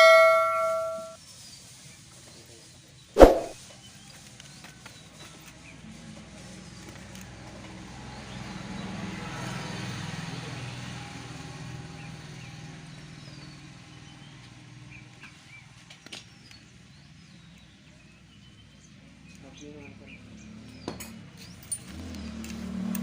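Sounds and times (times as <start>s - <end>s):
short high chirps: 0.0s - 1.2s, 3.2s - 3.6s
sharp click: 3.2s - 3.6s.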